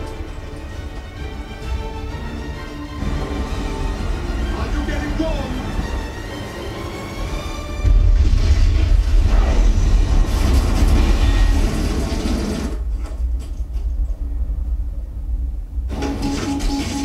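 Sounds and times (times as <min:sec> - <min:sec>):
film music: 0:00.0 - 0:12.9, 0:14.2 - 0:17.0
deep explosion rumble: 0:07.7 - 0:12.4.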